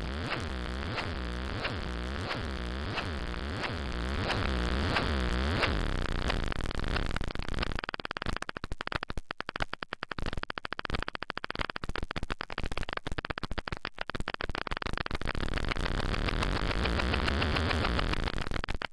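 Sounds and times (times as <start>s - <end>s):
synthesized electronic noise stuttering: 0.0s - 7.9s, 15.2s - 18.6s.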